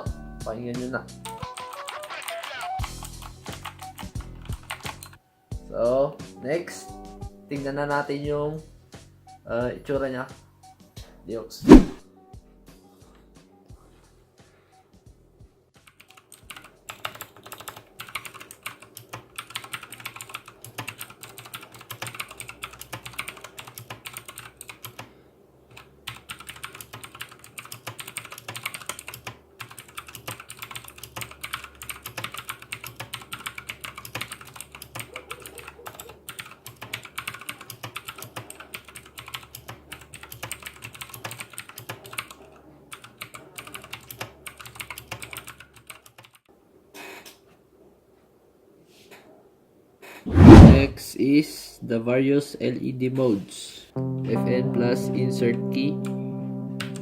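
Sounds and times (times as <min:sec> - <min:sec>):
mechanical keyboard typing: 0:01.4 - 0:05.2, 0:15.8 - 0:25.0, 0:25.7 - 0:46.4.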